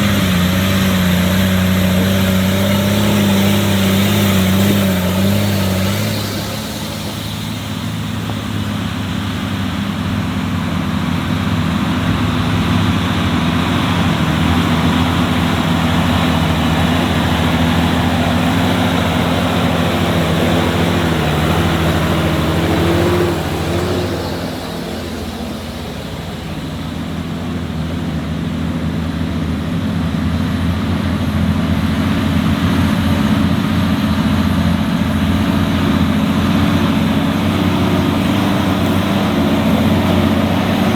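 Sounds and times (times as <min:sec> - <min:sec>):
rushing noise: 0:00.0 - 0:27.8
off-road vehicle engine running: 0:00.0 - 0:40.9.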